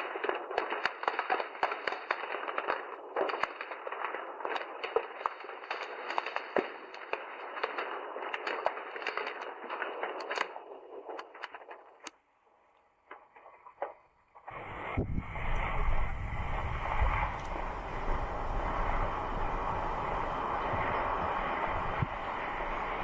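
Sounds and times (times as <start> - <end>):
rocks cracking and clattering: 0.0 - 12.1
loud deep rumble: 14.5 - 23.0.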